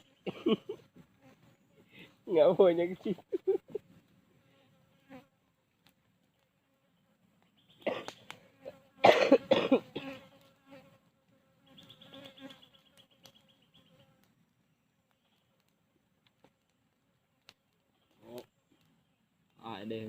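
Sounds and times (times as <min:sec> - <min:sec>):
insect buzzing: 0:00.0 - 0:02.0, 0:03.2 - 0:14.4
person coughing: 0:00.3 - 0:00.8, 0:07.8 - 0:10.2.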